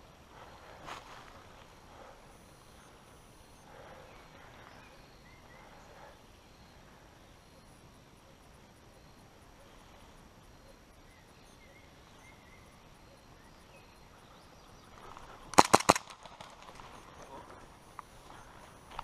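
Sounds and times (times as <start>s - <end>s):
faint chirps: 0.0s - 15.5s
airsoft gun shots: 15.5s - 16.5s.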